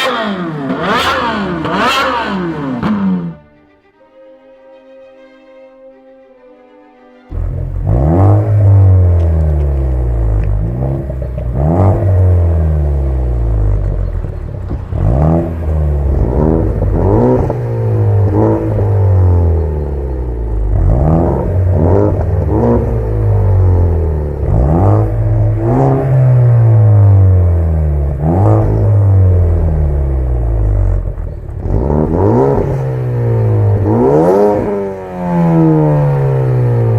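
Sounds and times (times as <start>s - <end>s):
car engine revving: 0.0s - 3.7s, 7.3s - 36.9s
engine rumbling idle: 7.3s - 36.9s.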